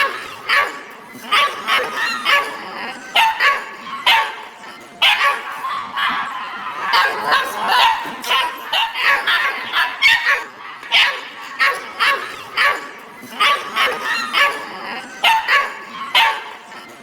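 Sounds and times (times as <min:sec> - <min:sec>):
many dogs barking: 0:00.0 - 0:17.0.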